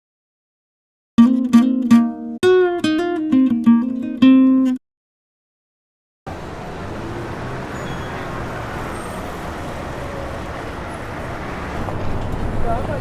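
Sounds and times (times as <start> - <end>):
road traffic rumble: 6.3 - 13.0.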